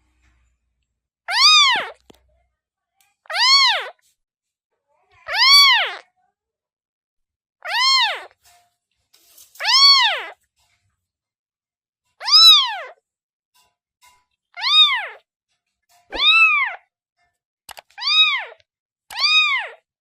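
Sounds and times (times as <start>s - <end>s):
kitten meowing: 1.3s - 2.0s, 3.3s - 4.0s, 5.3s - 6.0s, 7.6s - 8.3s, 9.6s - 10.4s, 12.2s - 13.0s, 14.6s - 15.2s, 16.1s - 16.8s, 18.0s - 19.8s.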